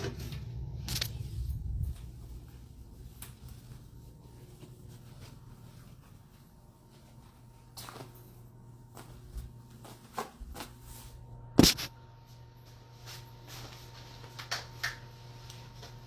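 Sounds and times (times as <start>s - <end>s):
steady low hum: 0.0s - 14.4s
sharp knock: 11.6s - 11.9s.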